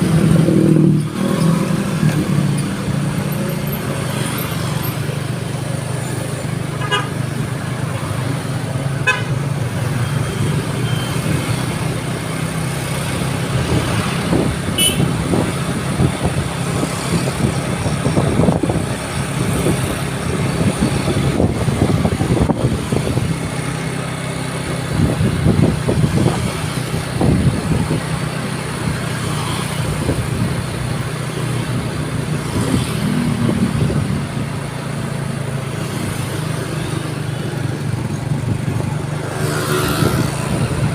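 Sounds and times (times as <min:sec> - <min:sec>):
traffic: 0:00.0 - 0:40.9
vehicle horn toots: 0:06.8 - 0:07.2, 0:09.0 - 0:09.4, 0:14.8 - 0:15.2.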